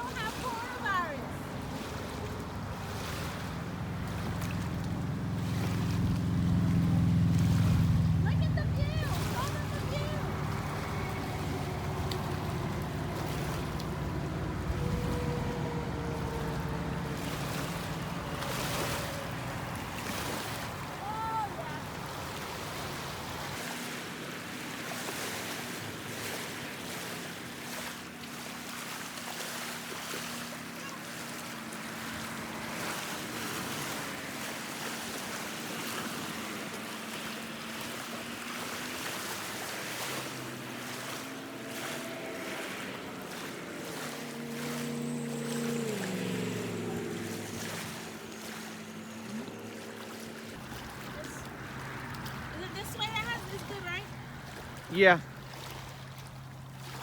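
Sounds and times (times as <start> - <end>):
wind buffeting microphone: 0.0 - 23.6
waves washing over rocky shore: 0.0 - 57.0.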